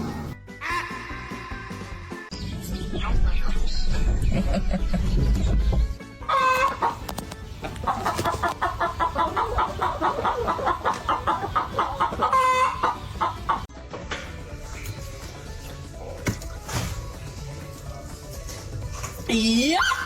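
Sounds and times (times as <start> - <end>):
chicken squawking: 0.6 - 2.3, 6.2 - 7.0, 7.6 - 13.7, 19.8 - 20.0
chicken clucking: 6.2 - 13.7.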